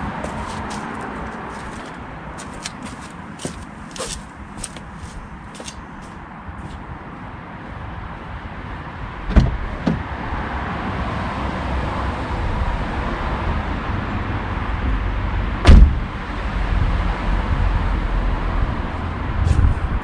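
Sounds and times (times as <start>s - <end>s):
car door trim clunks: 1.5s - 4.9s, 9.3s - 10.0s, 15.7s - 16.0s.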